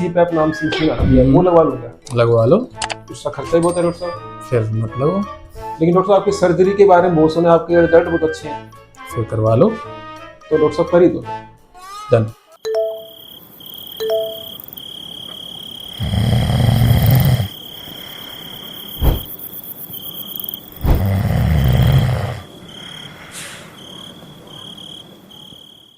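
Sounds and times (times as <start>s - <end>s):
crickets chirping: 12.5s - 25.9s
loud snores: 15.9s - 18.2s, 20.8s - 22.5s.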